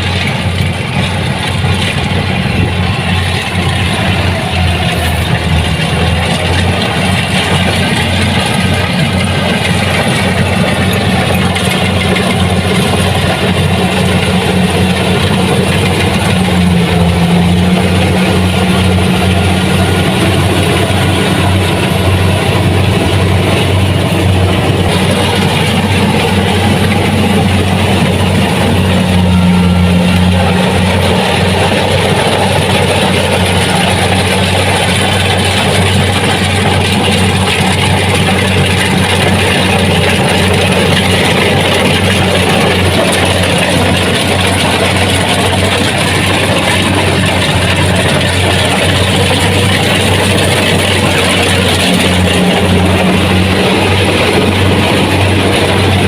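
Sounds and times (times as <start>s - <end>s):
combine harvester engine drone: 0.0s - 56.0s
machinery noise: 0.0s - 56.0s.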